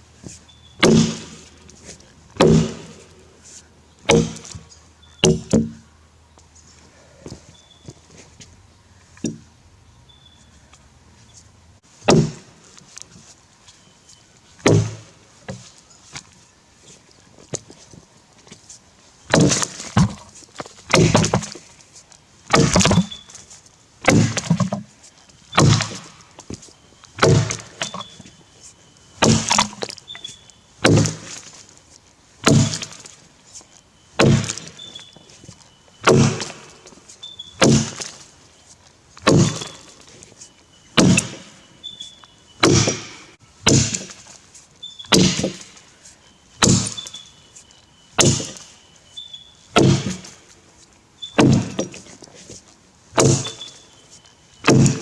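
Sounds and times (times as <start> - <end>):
axe chopping into log: 0.8 - 1.5, 2.4 - 3.0, 4.1 - 4.6, 5.2 - 5.8, 12.0 - 12.5, 14.6 - 15.1, 19.3 - 20.3, 20.9 - 21.6, 22.5 - 23.2, 24.0 - 24.8, 25.5 - 26.1, 27.2 - 28.2, 29.2 - 30.0, 30.8 - 31.4, 32.4 - 33.1, 34.2 - 34.9, 36.0 - 36.8, 37.6 - 38.2, 39.2 - 39.9, 41.0 - 41.5, 42.6 - 44.3, 45.1 - 45.8, 46.6 - 47.2, 48.2 - 48.7, 49.8 - 50.4, 51.4 - 52.1, 53.2 - 53.7, 54.6 - 55.0.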